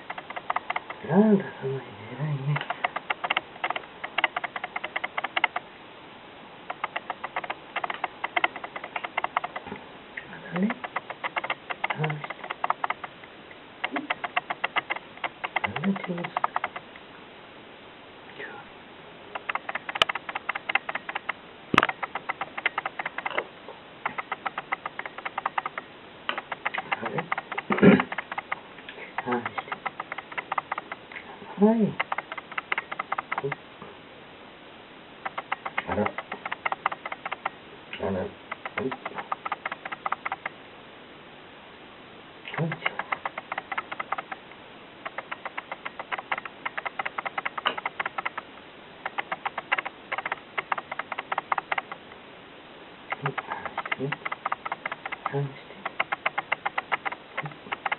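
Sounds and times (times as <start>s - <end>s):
kitten feeding wet smacking clicks: 0.0s - 1.0s, 2.5s - 5.6s, 6.7s - 9.7s, 10.5s - 13.2s, 13.8s - 16.8s, 19.4s - 23.4s, 24.0s - 28.6s, 29.2s - 31.0s, 32.0s - 33.6s, 35.2s - 37.5s, 38.5s - 40.5s, 42.6s - 52.0s, 53.1s - 57.9s.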